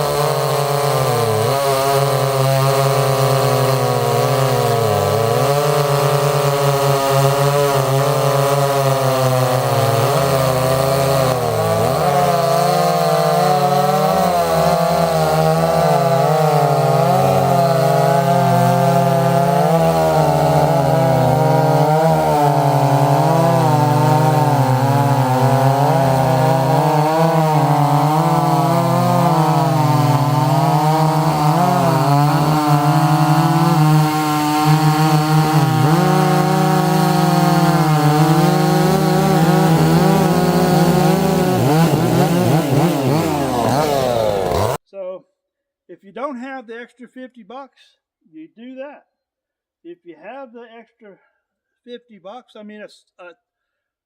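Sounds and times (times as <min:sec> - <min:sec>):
chainsaw cutting wood: 0:00.0 - 0:44.8.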